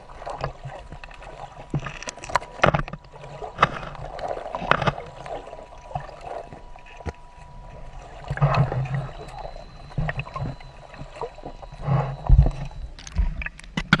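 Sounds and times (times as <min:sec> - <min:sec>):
water sloshing and splashing: 0:00.0 - 0:14.0
sharp clicks and knocks: 0:00.4 - 0:07.2, 0:08.3 - 0:14.0
low thumps: 0:08.2 - 0:13.4.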